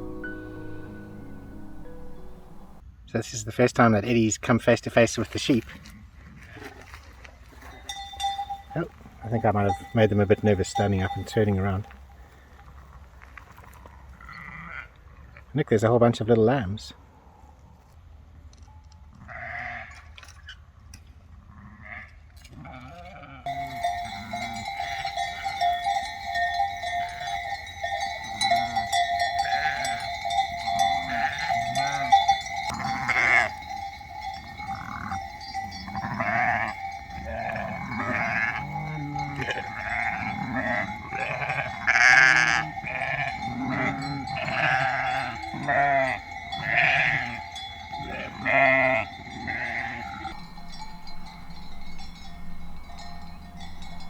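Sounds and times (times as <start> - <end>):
sheep bells ringing: 0.0 - 2.8, 7.5 - 12.8, 23.4 - 54.0
sheep and lambs bleating: 14.2 - 15.0, 19.2 - 20.0, 21.5 - 54.0.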